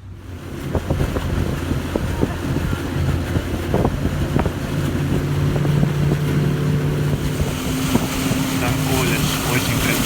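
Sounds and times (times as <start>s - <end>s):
boat motor humming: 0.0s - 10.0s
wind noise on microphone: 0.0s - 10.0s.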